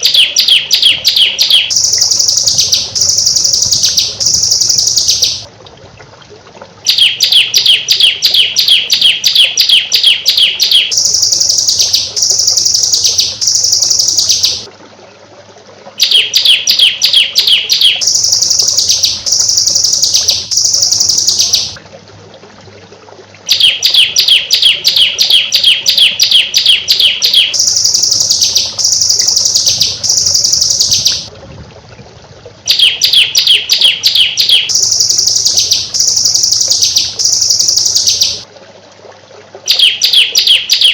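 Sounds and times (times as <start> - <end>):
recorded songbird song: 0.0 - 5.5, 6.8 - 14.7, 16.0 - 21.8, 23.5 - 31.3, 32.6 - 38.5, 39.6 - 40.9.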